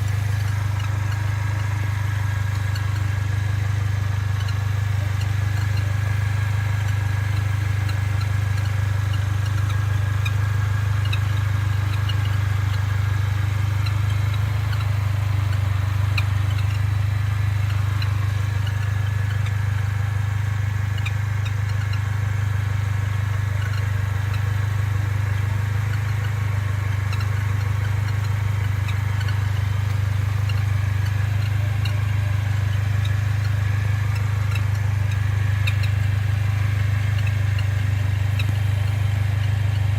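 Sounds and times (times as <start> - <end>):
bird-like chirping noise: 0.0 - 39.9
car engine droning: 0.0 - 39.9.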